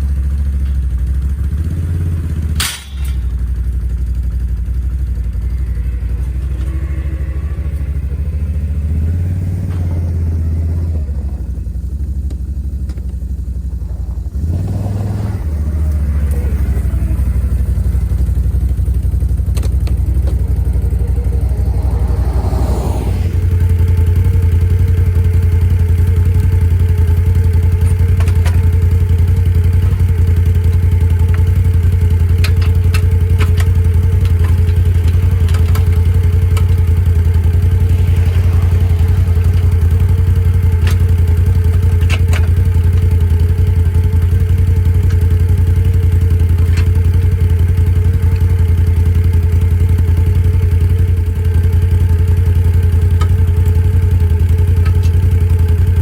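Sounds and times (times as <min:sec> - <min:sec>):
atv engine running: 0:00.0 - 0:56.0
clanks and knocks: 0:40.6 - 0:43.4.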